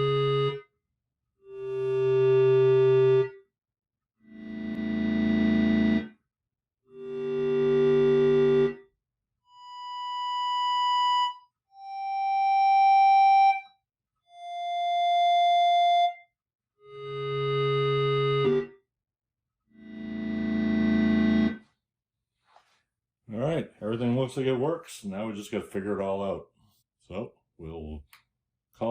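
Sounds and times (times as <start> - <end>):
synthesizer held notes: 19.8 - 21.6.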